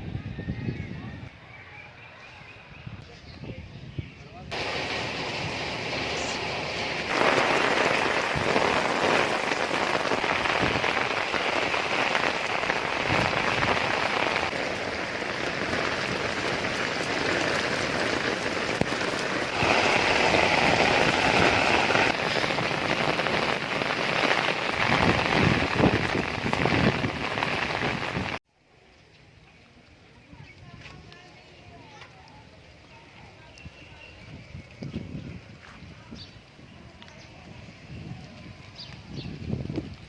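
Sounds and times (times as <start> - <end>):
heavy rain falling: 4.5 - 28.4.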